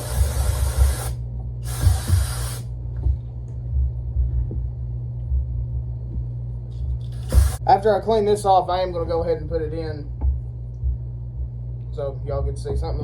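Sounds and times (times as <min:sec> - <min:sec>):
aerosol spray hissing: 0:00.0 - 0:02.7, 0:07.1 - 0:07.6
steady low hum: 0:00.0 - 0:13.0.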